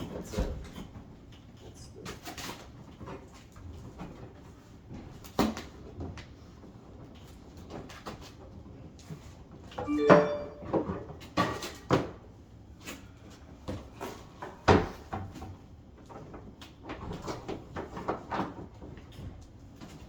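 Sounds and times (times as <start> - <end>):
brief metallic ring: 9.9 - 10.8.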